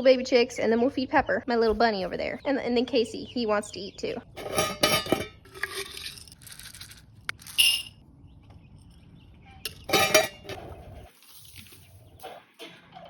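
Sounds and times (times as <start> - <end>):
feeding dishes rattling: 4.3 - 7.9, 9.7 - 10.6.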